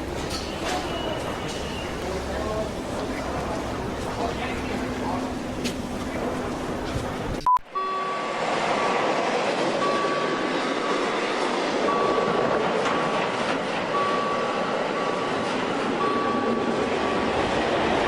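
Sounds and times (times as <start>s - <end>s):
train rolling with rushing noise: 0.0s - 18.0s
high tone: 7.4s - 9.1s.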